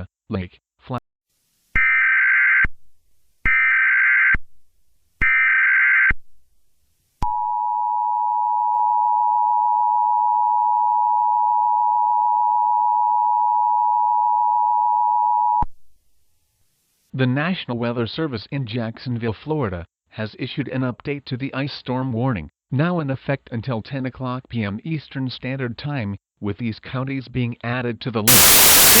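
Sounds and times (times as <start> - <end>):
buzzing data bursts: 28.3 - 29.0
two-tone attention signal: 28.3 - 29.0.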